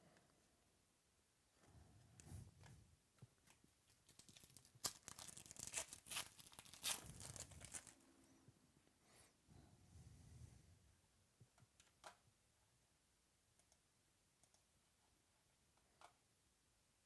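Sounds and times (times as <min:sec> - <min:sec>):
foil wrapper tearing and crinkling: 0:03.8 - 0:08.0.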